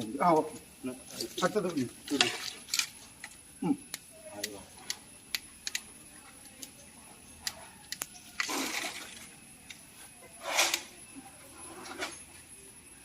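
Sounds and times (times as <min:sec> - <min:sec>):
water gushing from pipe: 0:08.4 - 0:09.2.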